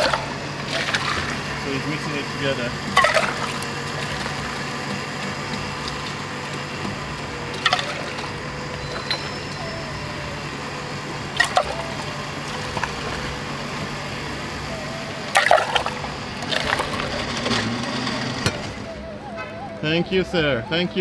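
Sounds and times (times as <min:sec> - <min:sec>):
liquid pouring into a glass: 0:00.0 - 0:17.7
glass clinks: 0:08.8 - 0:09.9.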